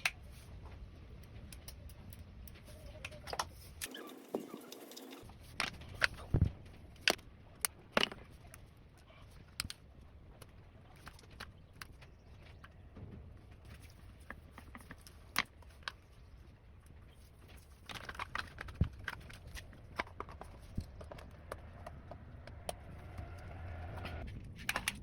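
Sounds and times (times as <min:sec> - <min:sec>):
low steady hum: 0:05.2 - 0:25.0.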